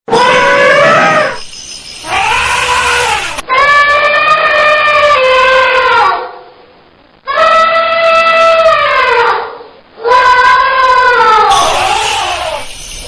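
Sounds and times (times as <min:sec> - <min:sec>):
elephant trumpeting: 0:00.1 - 0:03.4, 0:11.5 - 0:13.0.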